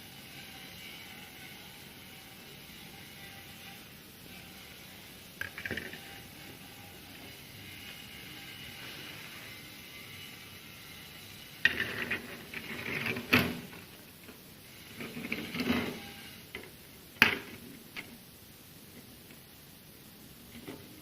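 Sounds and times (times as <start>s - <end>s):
clatter of hard objects: 5.4s - 6.1s.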